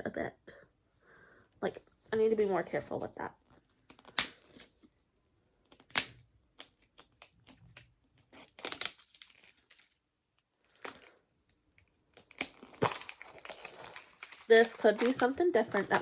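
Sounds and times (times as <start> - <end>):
paper crinkling and tearing: 12.2 - 16.0.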